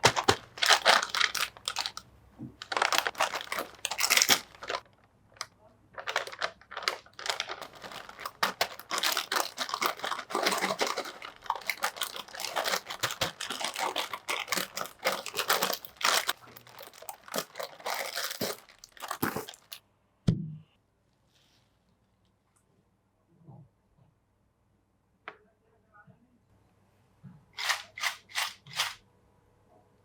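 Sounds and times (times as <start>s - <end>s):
plastic packet crinkling: 0.0s - 19.8s, 27.6s - 29.0s.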